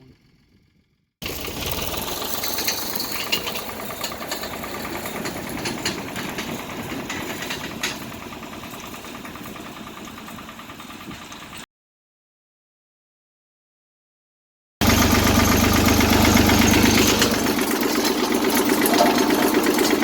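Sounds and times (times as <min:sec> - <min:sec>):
vehicle engine running: 0:00.0 - 0:11.6, 0:14.8 - 0:20.0
metal clanks and knocks: 0:02.5 - 0:10.2, 0:16.2 - 0:20.0.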